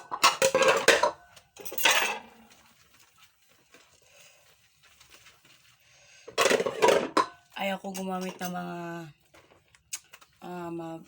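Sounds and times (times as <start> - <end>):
dishes and cutlery clattering: 0.0 - 2.4, 6.3 - 8.7.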